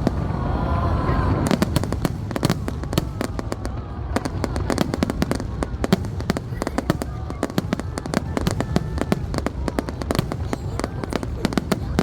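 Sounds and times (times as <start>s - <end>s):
low rumble: 0.0s - 5.8s
fireworks bangs and crackles: 0.0s - 12.0s.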